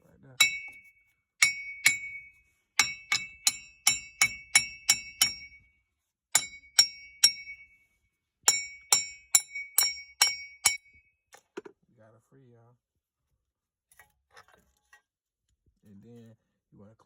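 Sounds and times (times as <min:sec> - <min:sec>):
hammer clanging on metal hub: 0:00.3 - 0:05.7, 0:06.3 - 0:07.8, 0:08.5 - 0:11.0.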